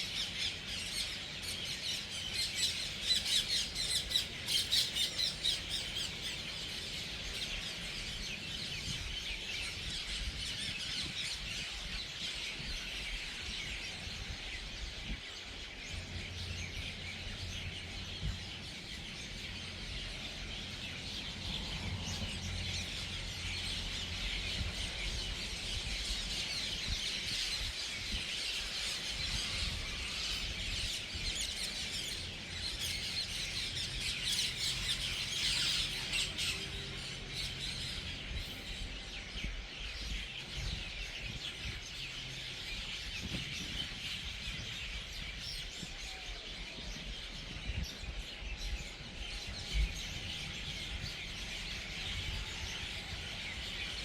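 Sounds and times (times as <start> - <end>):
flock of birds chirping: 0.0 - 54.0.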